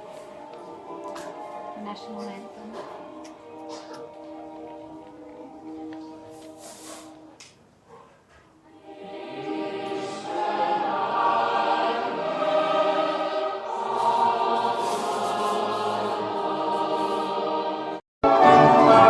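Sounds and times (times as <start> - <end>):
instrumental music with strings: 0.0 - 7.4, 8.8 - 19.0
group singing an anthem: 8.7 - 19.0.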